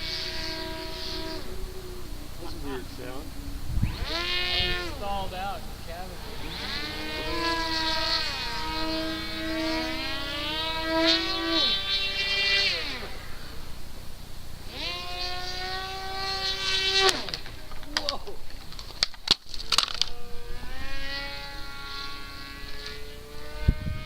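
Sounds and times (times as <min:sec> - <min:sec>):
wind rumble on microphone: 0:00.0 - 0:11.9, 0:22.7 - 0:24.0
model plane motor whining: 0:00.0 - 0:24.0.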